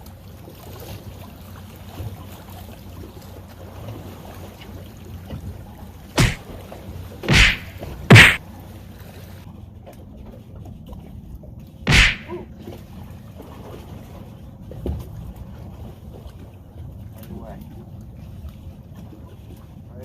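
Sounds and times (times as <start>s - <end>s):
sharp thumps on a boat: 6.2s - 6.4s, 7.3s - 8.4s, 11.9s - 12.3s.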